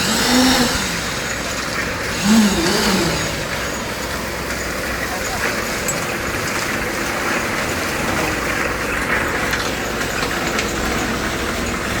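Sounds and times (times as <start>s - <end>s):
backhoe engine rumbling: 0.0s - 12.0s.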